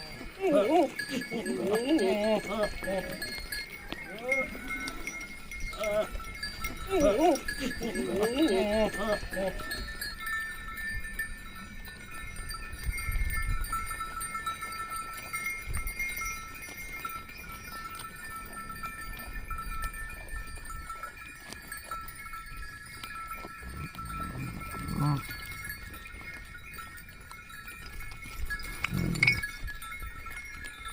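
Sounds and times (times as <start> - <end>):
animal bells clinking: 0.0 - 30.9.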